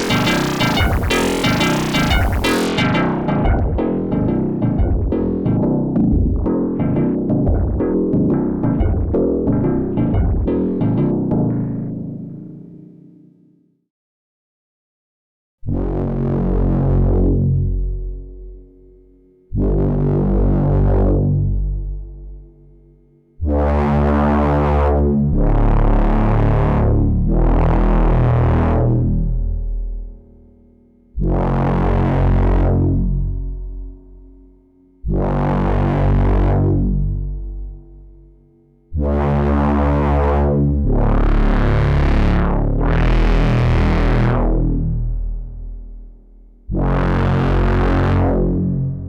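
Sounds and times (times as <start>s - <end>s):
synthesizer sustained notes: 0.0s - 12.2s
low sequenced synthesizer tone: 0.0s - 13.1s, 16.2s - 49.0s.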